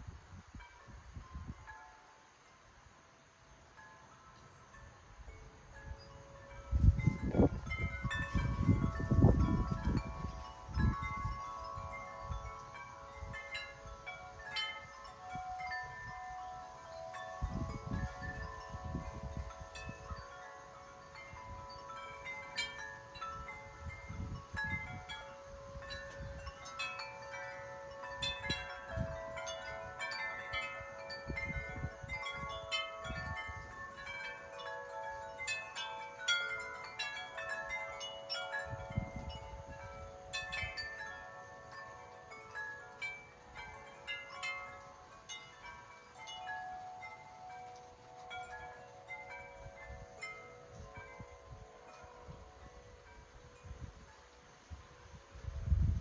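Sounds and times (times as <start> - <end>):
wind chimes ringing: 0.0 - 56.0
wind buffeting microphone: 5.2 - 37.8, 38.4 - 41.1, 48.3 - 56.0.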